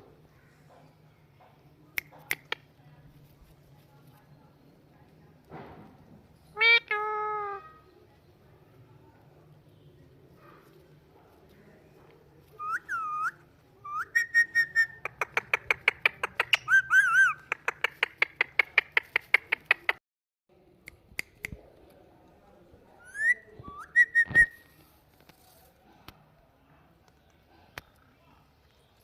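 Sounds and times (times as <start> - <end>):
parrot whistling: 12.6 - 15.0, 16.6 - 17.4.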